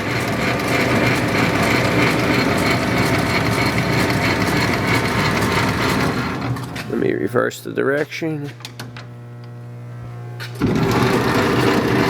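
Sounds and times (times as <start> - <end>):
lathe running: 0.0 - 7.4, 10.4 - 12.0.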